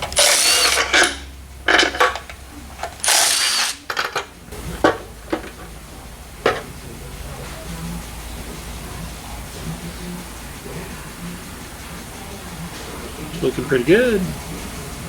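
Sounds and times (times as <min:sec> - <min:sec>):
metal parts clinking: 0:00.0 - 0:05.7, 0:06.4 - 0:06.7
power tool running: 0:00.0 - 0:06.8.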